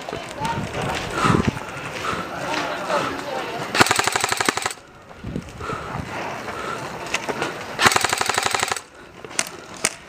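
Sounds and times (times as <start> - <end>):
airsoft gun full-auto burst: 3.8 - 4.8, 7.8 - 8.9
sharp clicks: 3.8 - 4.8, 7.8 - 10.0.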